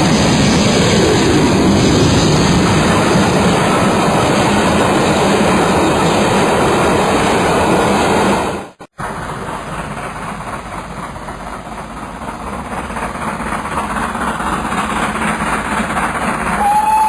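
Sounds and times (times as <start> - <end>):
steam locomotive rushing: 0.0 - 17.0
steam whistle: 16.6 - 17.0.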